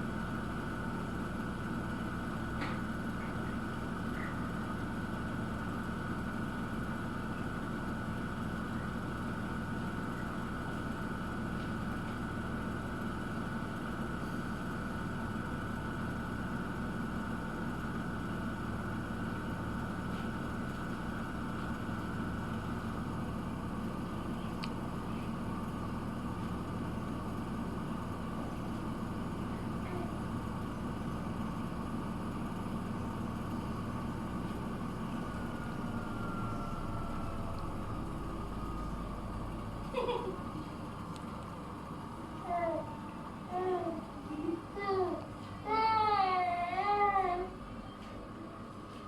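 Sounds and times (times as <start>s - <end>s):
washing machine hum: 0.0s - 49.0s
constant high whine: 7.9s - 48.5s.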